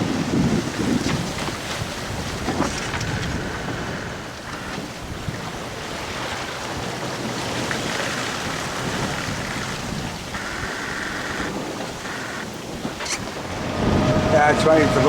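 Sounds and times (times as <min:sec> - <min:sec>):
water rushing along boat hull: 0:00.0 - 0:15.0
wind buffeting microphone: 0:00.0 - 0:15.0.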